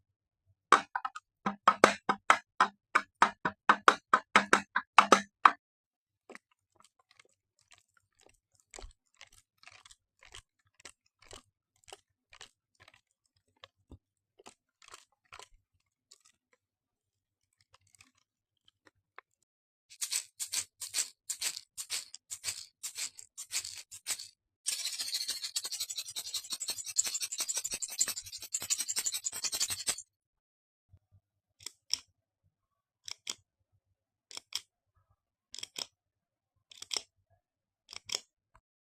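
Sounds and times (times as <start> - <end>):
object scraped in quick strokes: 19.9 - 30.0.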